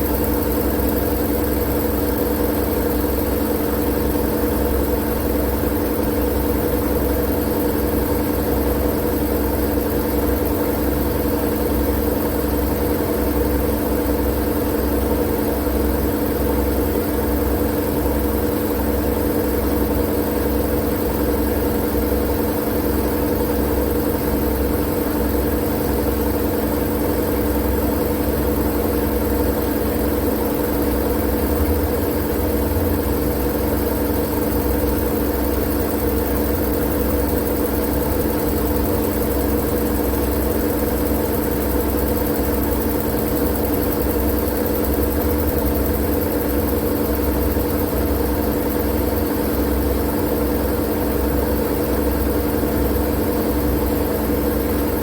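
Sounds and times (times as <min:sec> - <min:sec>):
low hum and rumble: 0:23.7 - 0:51.0.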